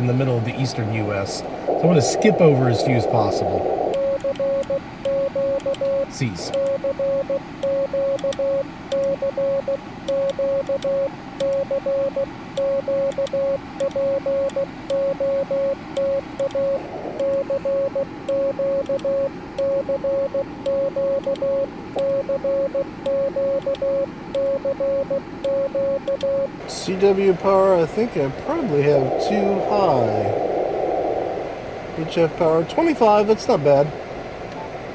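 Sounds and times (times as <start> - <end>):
faint radio band hiss: 0.0 - 6.6, 15.8 - 19.6, 26.4 - 34.9
morse code beeps: 1.4 - 26.6.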